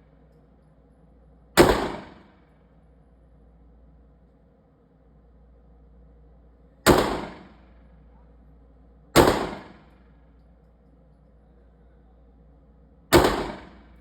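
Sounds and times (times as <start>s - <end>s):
pistol shots: 1.6s - 2.4s, 6.9s - 7.7s, 9.2s - 10.0s, 13.1s - 14.0s.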